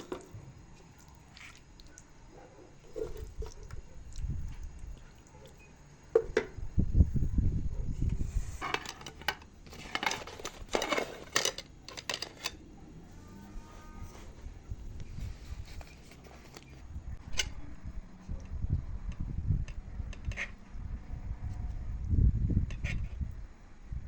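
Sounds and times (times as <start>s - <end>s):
sharp knocks and scrapes: 8.1s - 12.5s
dishes and utensils clattering: 8.6s - 12.6s.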